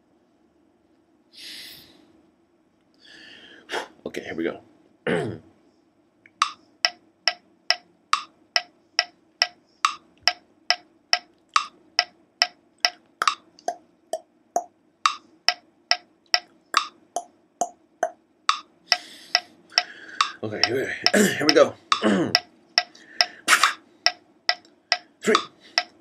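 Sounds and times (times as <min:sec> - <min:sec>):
metronome clicks: 0:06.3 - 0:13.8, 0:14.6 - 0:17.0, 0:18.5 - 0:23.4, 0:24.0 - 0:26.0.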